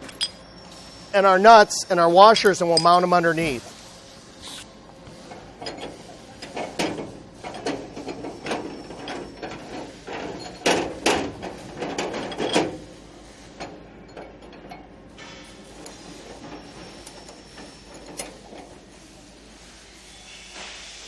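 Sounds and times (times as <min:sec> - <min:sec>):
metal hardware clinking: 0:00.0 - 0:00.5, 0:02.2 - 0:03.5.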